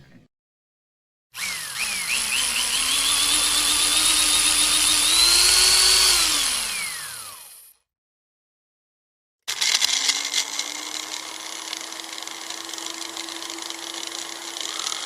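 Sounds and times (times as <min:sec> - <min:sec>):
blender motor whining: 0:01.4 - 0:07.8, 0:09.5 - 0:15.0.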